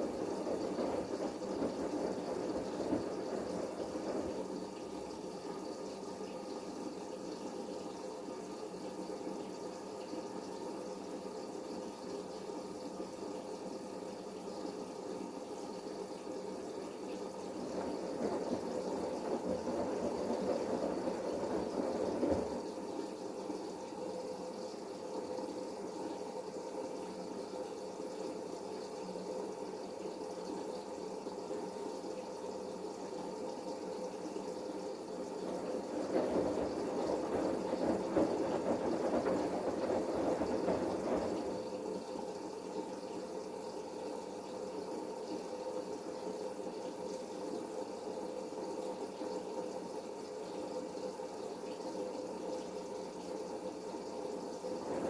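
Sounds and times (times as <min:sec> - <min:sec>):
washing machine water sloshing: 0:16.9 - 0:23.0.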